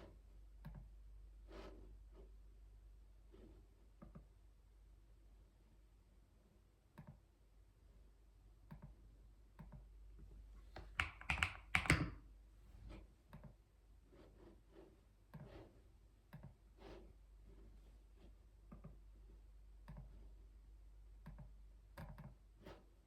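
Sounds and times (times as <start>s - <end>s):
computer keyboard typing: 10.8s - 12.2s.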